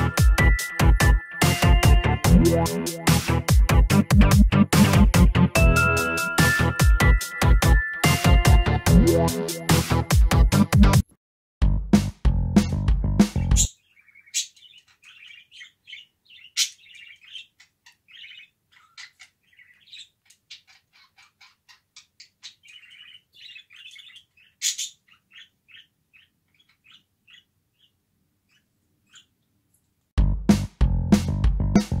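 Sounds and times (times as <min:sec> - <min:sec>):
sharp bird calls: 0:13.4 - 0:29.4
pet birds chirping: 0:13.4 - 0:29.5.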